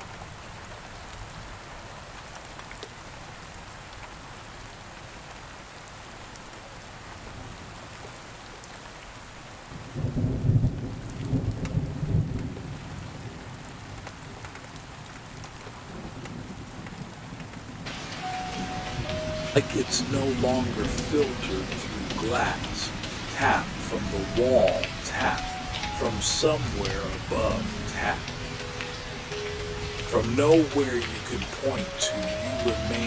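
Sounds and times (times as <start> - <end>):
rain hissing: 17.8 - 33.0
thunder rolling: 17.9 - 33.0.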